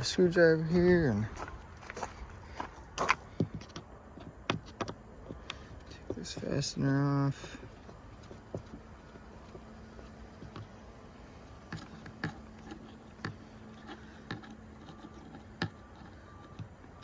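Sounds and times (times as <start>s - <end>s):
screwdriver clicks and taps: 3.4s - 5.7s.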